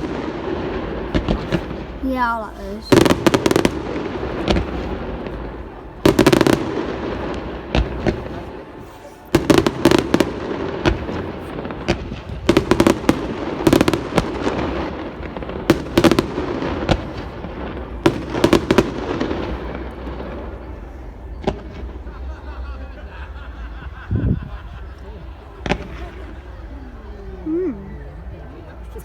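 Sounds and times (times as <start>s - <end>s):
fireworks bursting with crackle: 0.0s - 22.2s, 25.5s - 26.4s.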